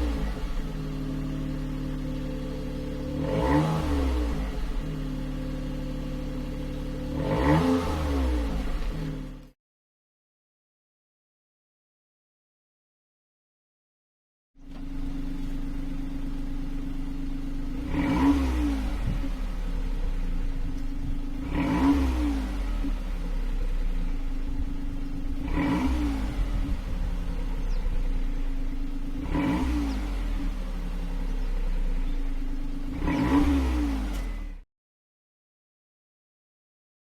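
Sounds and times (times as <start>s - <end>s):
engine exhaust idling: 0.0s - 7.3s, 14.6s - 33.1s
engine revving: 0.0s - 9.5s, 14.7s - 34.6s.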